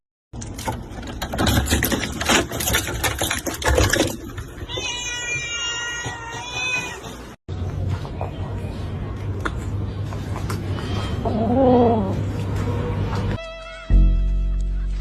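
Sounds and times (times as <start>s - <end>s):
scuffling and clattering: 0.4s - 8.4s
cat meowing: 4.7s - 7.1s.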